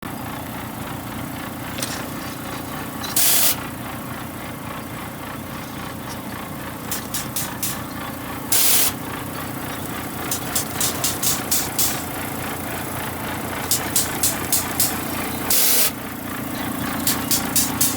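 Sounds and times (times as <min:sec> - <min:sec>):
machine engine under load: 0:00.2 - 0:17.9
loud short hisses: 0:03.2 - 0:03.6
sharp ticks: 0:04.6 - 0:17.9.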